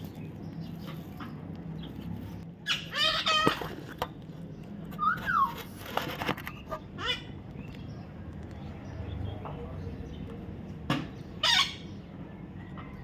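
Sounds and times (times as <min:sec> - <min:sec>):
parrot calling: 0:02.6 - 0:03.7, 0:04.9 - 0:05.8, 0:06.7 - 0:07.4, 0:11.4 - 0:12.0
parrot whistling: 0:05.0 - 0:05.6.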